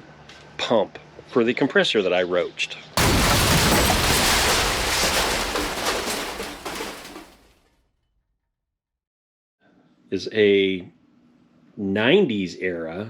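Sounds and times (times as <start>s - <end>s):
explosion blast rumbling: 3.0s - 7.4s.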